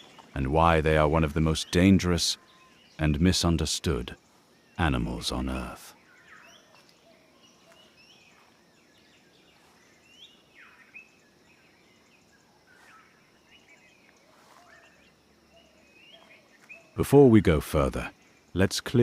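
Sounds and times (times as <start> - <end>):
faint bird chirps: 0.0 - 19.0.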